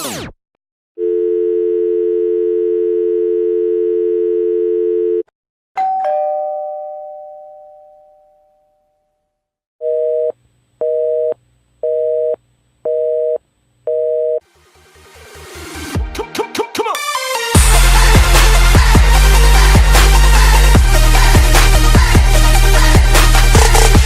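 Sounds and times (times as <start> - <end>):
telephone dial tone: 1.0 - 5.2.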